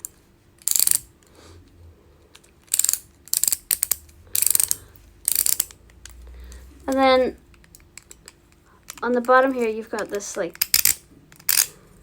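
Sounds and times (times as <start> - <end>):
fidget toy ratcheting clicks: 0.6 - 1.1, 2.6 - 6.2, 6.8 - 11.7.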